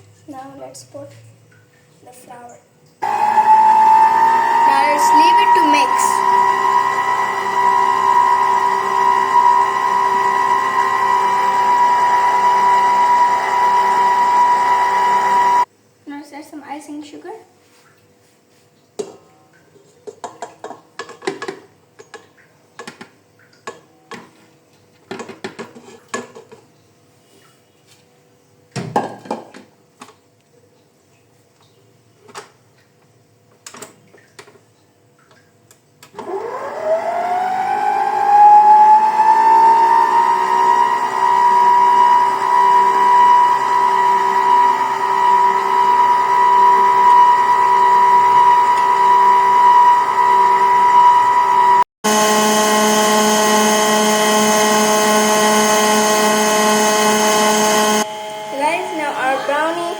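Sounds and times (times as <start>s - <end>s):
electric mixer whining: 3.0s - 15.7s, 36.2s - 59.9s.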